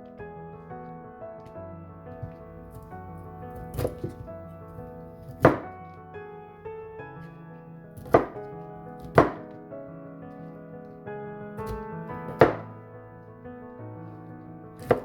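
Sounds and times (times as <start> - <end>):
background music: 0.0 - 15.0
knife chopping on cutting board: 3.7 - 4.2, 5.3 - 5.6, 8.0 - 8.4, 9.0 - 9.4, 11.6 - 12.6, 14.8 - 15.0.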